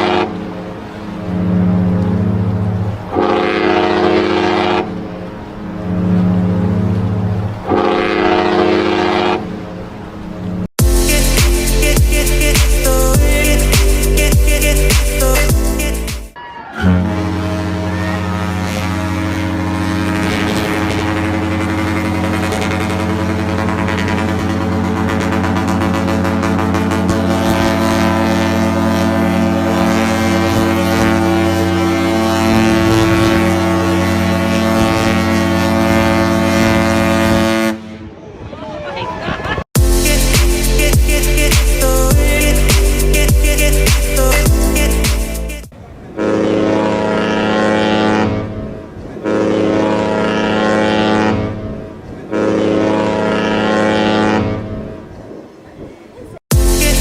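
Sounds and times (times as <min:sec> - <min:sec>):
ship horn blast: 0:00.0 - 0:38.2, 0:39.8 - 0:55.2.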